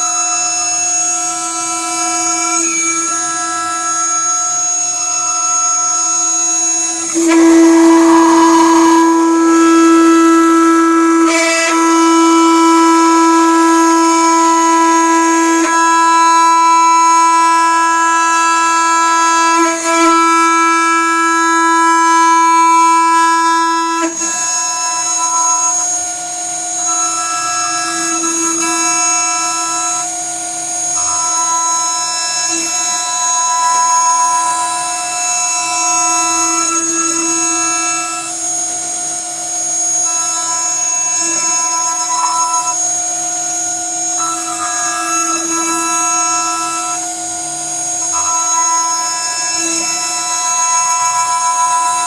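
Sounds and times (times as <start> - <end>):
router spindle whining: 0.0 - 52.0.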